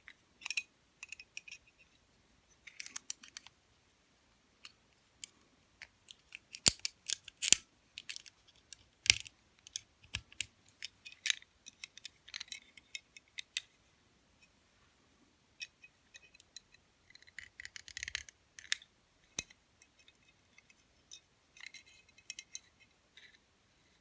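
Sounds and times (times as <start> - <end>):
lock pick clicking and scraping: 2.7 - 3.5, 5.8 - 13.0, 17.2 - 18.8.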